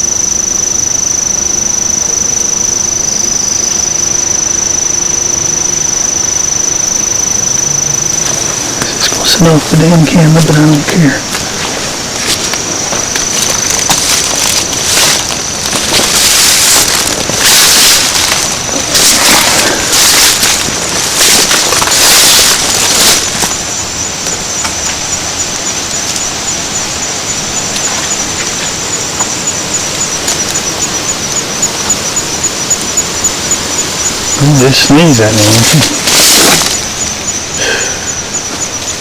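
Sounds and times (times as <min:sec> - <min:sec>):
steady hiss: 0:00.0 - 0:39.0
loud rustling bursts: 0:11.2 - 0:23.9, 0:33.8 - 0:37.3.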